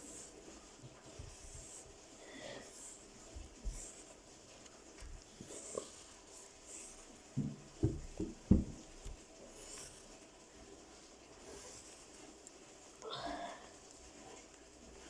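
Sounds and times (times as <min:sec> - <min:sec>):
pen scratching on paper: 0:00.0 - 0:02.0, 0:02.6 - 0:07.2, 0:09.1 - 0:10.2
soft knocks: 0:07.4 - 0:09.2.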